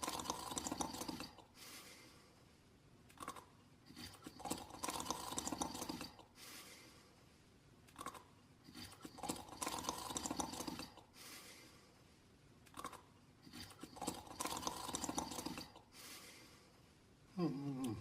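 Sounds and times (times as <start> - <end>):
raspy snoring: 3.2 - 6.2, 8.0 - 11.0, 13.5 - 15.8.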